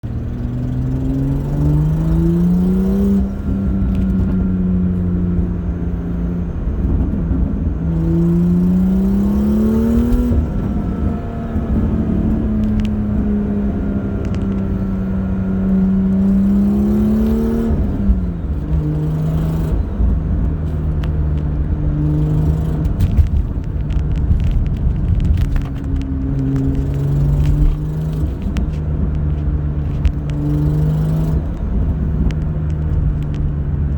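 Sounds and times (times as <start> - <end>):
car engine revving and idling: 0.0 - 33.9.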